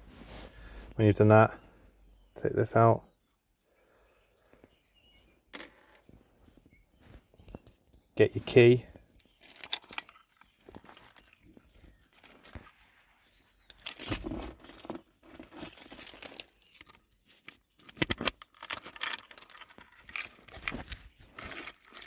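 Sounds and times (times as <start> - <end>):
keys jangling: 9.4 - 12.9, 13.7 - 17.0, 17.8 - 22.0.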